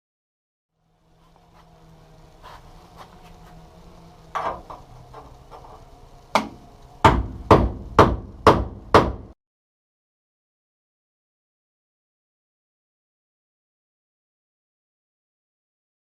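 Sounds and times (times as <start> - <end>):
hammer blows on sheet metal: 6.4 - 9.4.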